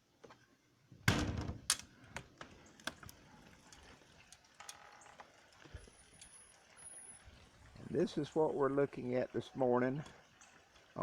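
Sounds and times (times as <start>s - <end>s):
door creak: 4.6s - 5.2s.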